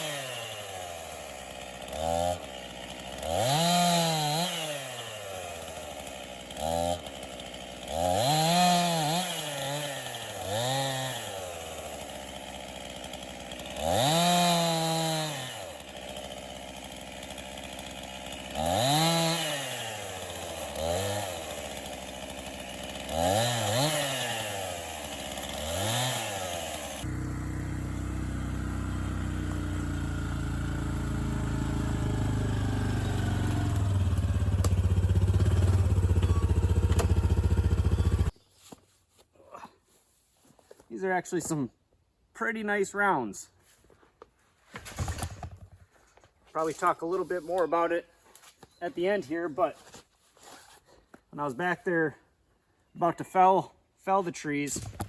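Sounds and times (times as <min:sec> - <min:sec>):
chainsaw revving: 0:00.0 - 0:38.4
steady engine note: 0:27.1 - 0:38.3.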